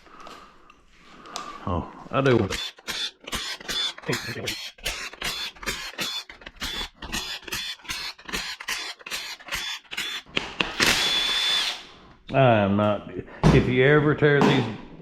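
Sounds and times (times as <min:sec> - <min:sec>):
cordless impact wrench whining: 0:02.2 - 0:12.1.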